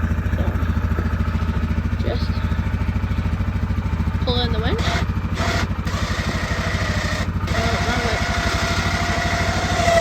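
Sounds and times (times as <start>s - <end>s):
atv engine idling: 0.0s - 10.0s
electric winch whine: 4.8s - 10.0s.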